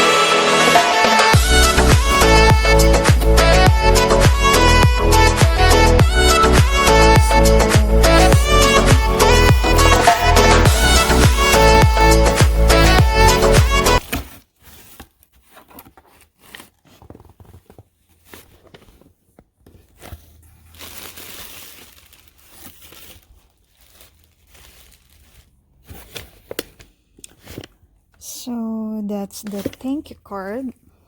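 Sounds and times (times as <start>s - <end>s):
music: 0.0s - 14.0s
paper packaging crinkling: 1.4s - 4.7s, 6.1s - 27.8s.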